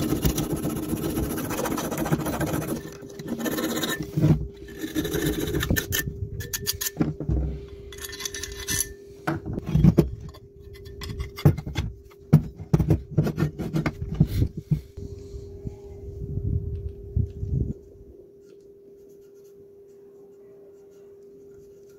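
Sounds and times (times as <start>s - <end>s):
steady low hum: 0.0s - 21.9s
tools scraping and clinking: 1.7s - 12.2s.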